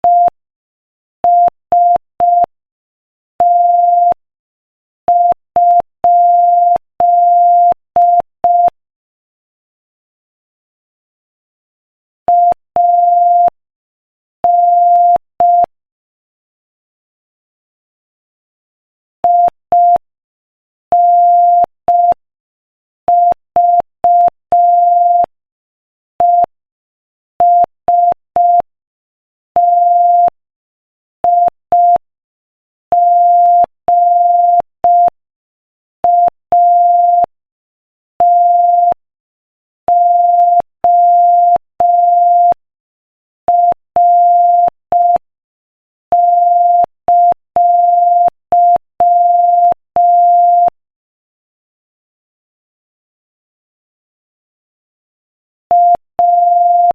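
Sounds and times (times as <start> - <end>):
morse code beeps: 0.0 - 0.4, 29.6 - 30.3, 31.2 - 32.0, 32.9 - 35.2, 36.0 - 37.3, 38.2 - 39.0, 39.9 - 42.6, 43.5 - 45.3, 46.1 - 50.8, 55.7 - 56.9.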